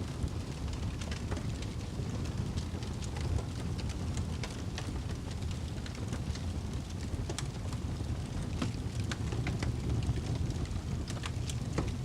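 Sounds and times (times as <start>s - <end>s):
wood fire crackling and popping: 0.0s - 12.0s.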